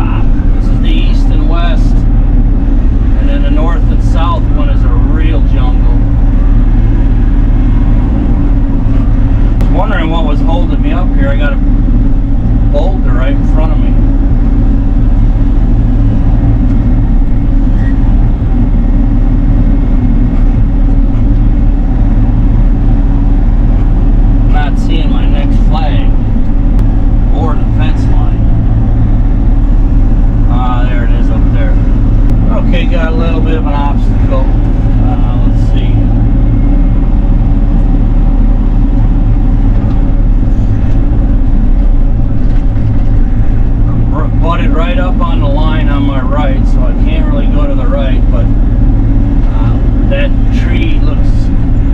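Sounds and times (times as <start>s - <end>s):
excavator diesel engine running: 0.0s - 51.9s.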